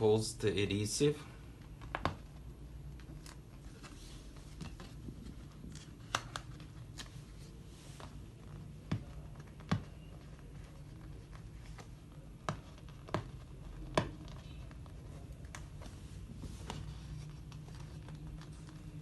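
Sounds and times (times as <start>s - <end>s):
soft rustles: 3.1s - 12.8s, 14.3s - 19.0s.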